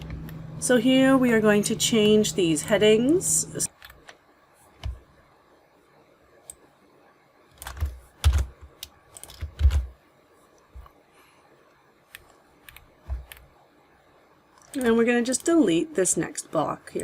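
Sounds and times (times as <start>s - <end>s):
computer keyboard typing: 7.5s - 10.0s, 12.1s - 13.5s, 14.6s - 15.6s.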